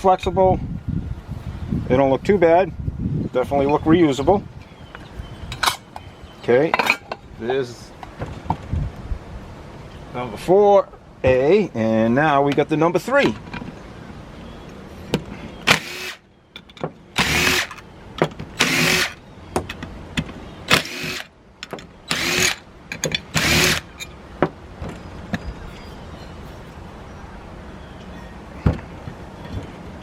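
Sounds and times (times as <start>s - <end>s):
power tool whine: 15.7s - 16.2s, 17.2s - 17.8s, 18.6s - 19.2s, 20.7s - 21.3s, 22.1s - 22.6s, 23.3s - 23.9s.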